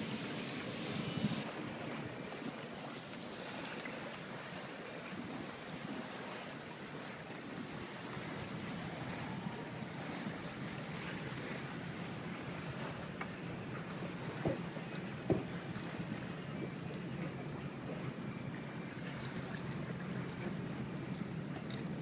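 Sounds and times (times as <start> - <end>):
water washing along a boat: 0.0 - 22.0
wind on microphone: 0.1 - 2.2, 7.5 - 13.7.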